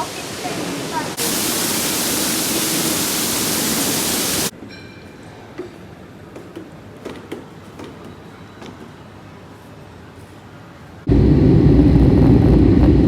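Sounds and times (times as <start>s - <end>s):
loud rushing hiss: 0.0s - 4.5s.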